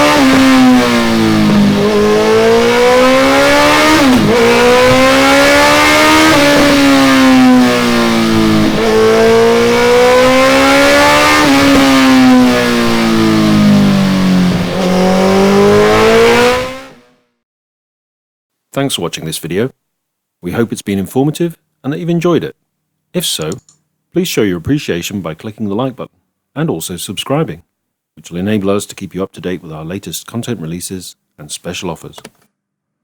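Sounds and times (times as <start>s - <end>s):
motorcycle engine revving: 0.0s - 17.2s.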